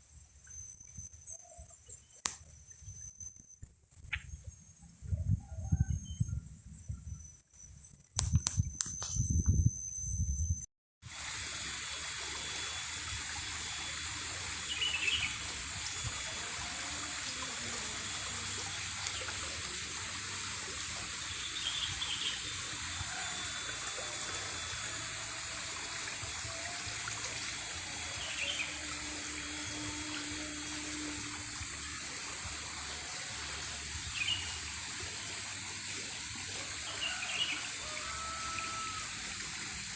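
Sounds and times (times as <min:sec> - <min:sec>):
flowing water: 0:11.1 - 0:39.9.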